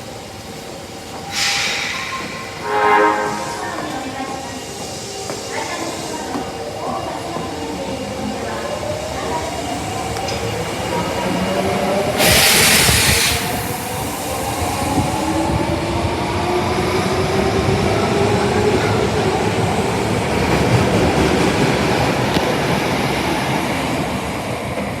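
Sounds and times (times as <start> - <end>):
train rumble: 0.0 - 25.0
air hiss: 1.3 - 2.6, 12.1 - 15.6.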